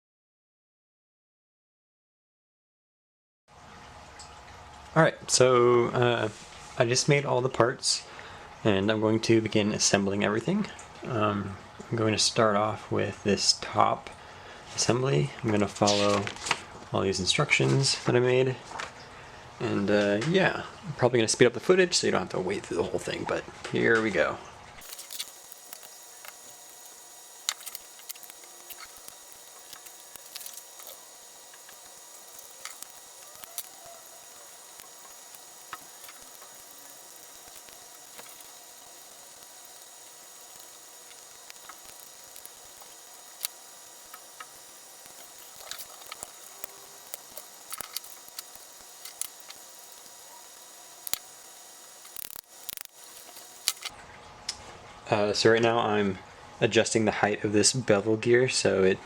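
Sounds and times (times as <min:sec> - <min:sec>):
small mechanical parts clicking: 0:24.8 - 0:53.9.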